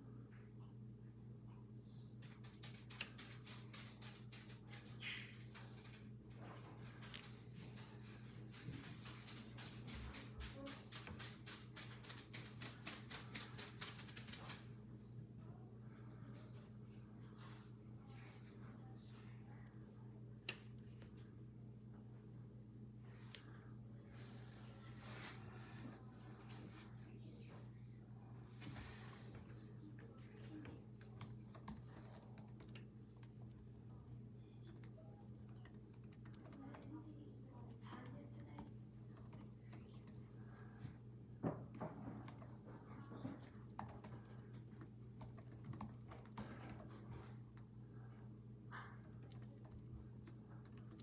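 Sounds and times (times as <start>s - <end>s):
steady low hum: 0.0s - 51.0s
typing on computer keyboard: 31.1s - 33.5s, 34.6s - 37.0s, 43.4s - 47.0s, 49.1s - 51.0s.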